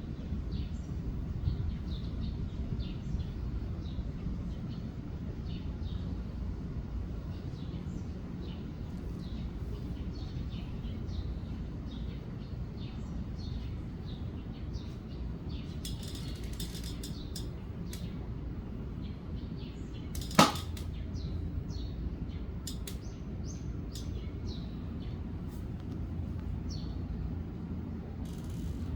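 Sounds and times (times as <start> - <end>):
small birds chirping: 0.0 - 28.9
wind rumbling on microphone: 0.0 - 28.9
sharp click: 22.6 - 23.1.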